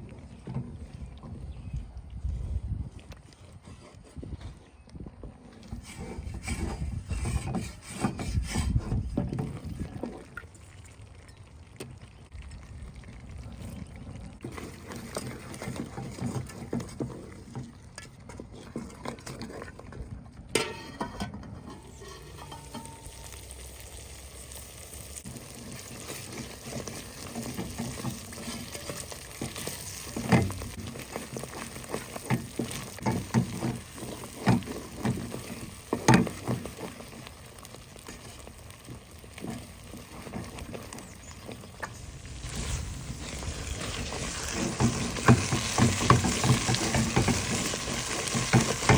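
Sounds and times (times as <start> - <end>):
spoon scraping a pot: 5.6 - 9.6, 20.6 - 23.4
ghee sizzling and crackling: 21.6 - 48.9.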